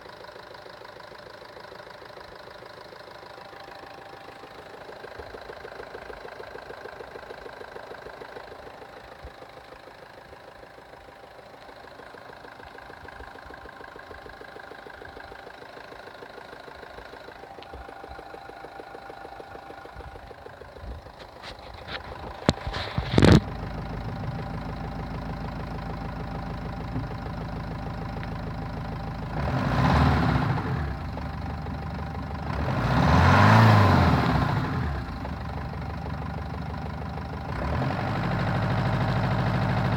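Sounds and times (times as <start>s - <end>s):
car engine idling with knocking: 0.0s - 39.9s
engine revving: 12.4s - 39.9s.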